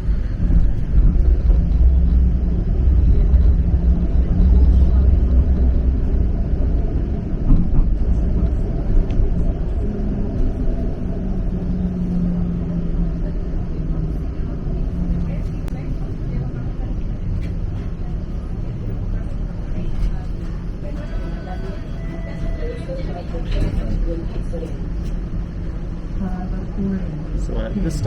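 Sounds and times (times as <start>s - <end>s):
low hum: 0.0s - 20.9s
streetcar wheels and motors rumbling: 0.0s - 28.0s.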